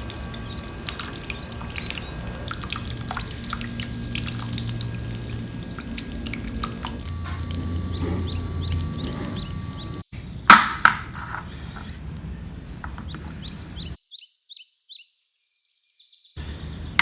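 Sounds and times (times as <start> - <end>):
water dripping and splashing: 0.0 - 10.0
steady low hum: 0.0 - 10.1.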